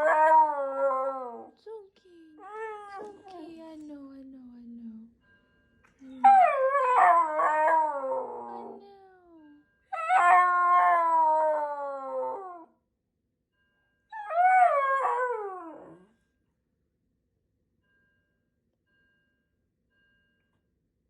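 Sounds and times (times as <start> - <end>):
dog howling wails: 0.0 - 1.5, 2.4 - 3.4, 6.2 - 8.8, 10.0 - 12.7, 14.2 - 16.1.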